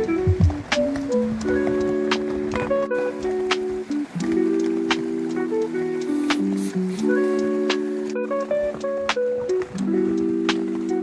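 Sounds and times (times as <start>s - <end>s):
light ticks: 0.0s - 7.8s
background music with held chords: 0.0s - 11.0s.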